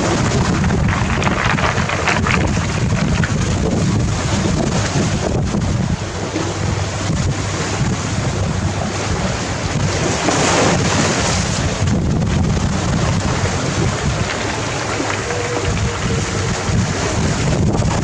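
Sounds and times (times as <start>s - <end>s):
waves crashing on gravel beach: 0.0s - 5.6s, 9.3s - 18.0s
wind buffeting microphone: 0.0s - 18.0s.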